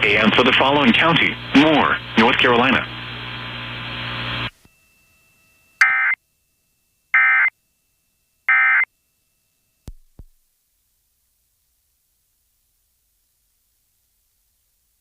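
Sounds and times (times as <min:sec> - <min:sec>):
hiss and hum: 0:00.0 - 0:04.8
digital data tone bursts: 0:05.8 - 0:06.2, 0:07.1 - 0:07.5.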